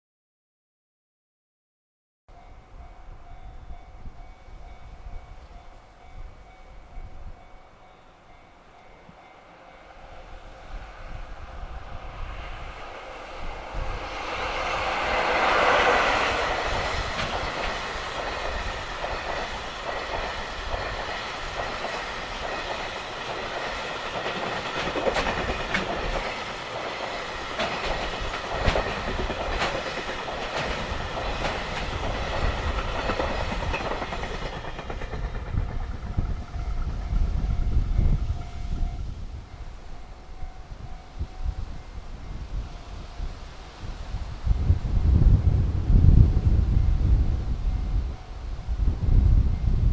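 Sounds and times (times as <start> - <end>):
freight train passing: 2.3 - 49.9
wheels clicking over rail joints: 15.2 - 37.9.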